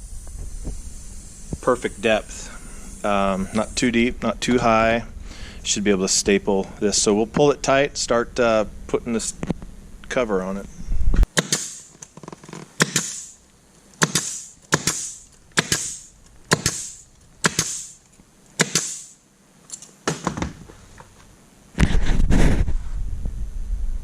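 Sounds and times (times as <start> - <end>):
short air hiss: 0.0 - 4.0, 11.4 - 12.0, 12.8 - 13.4, 14.0 - 18.0, 18.6 - 19.2
staple gun snapping: 11.4 - 12.1, 12.8 - 13.3, 14.0 - 18.0, 18.6 - 19.1.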